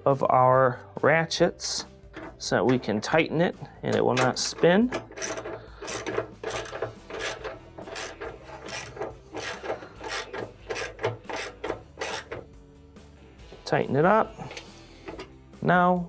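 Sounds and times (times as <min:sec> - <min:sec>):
socket ratchet wrench clicking: 0:04.0 - 0:12.5, 0:14.4 - 0:15.3.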